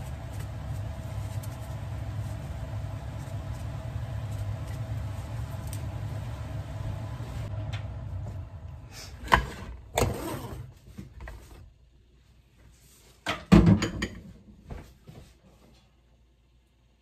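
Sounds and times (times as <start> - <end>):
low steady hum: 0.0 - 13.2.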